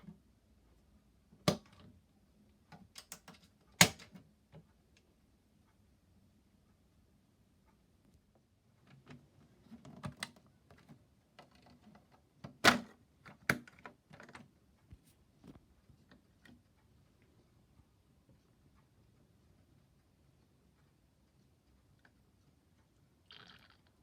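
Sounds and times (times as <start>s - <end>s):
plastic toy clicks and knocks: 2.8s - 4.2s.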